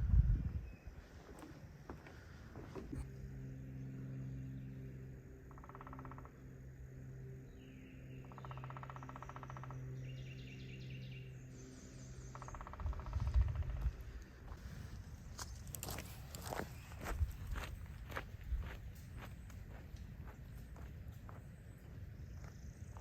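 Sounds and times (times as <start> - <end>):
steady low hum: 0.0 - 23.0
birds chirping: 0.4 - 23.0
rustling footsteps: 13.8 - 22.6.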